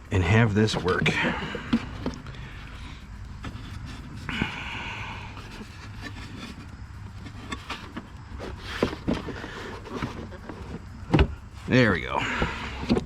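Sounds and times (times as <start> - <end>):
low steady hum: 0.0 - 13.0
scraping rub: 0.3 - 4.6, 5.2 - 13.0
plastic knocks and clicks: 7.4 - 11.4, 12.4 - 13.0.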